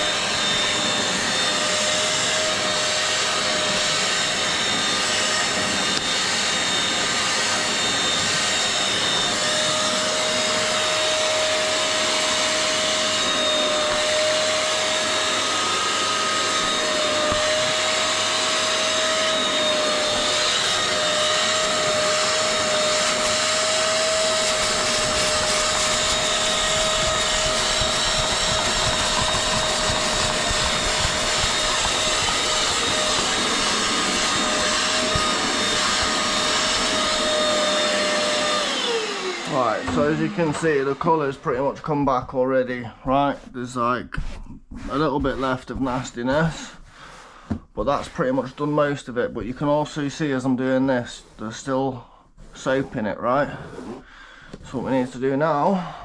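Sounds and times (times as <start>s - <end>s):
wet-and-dry vacuum whining: 0.0s - 44.0s.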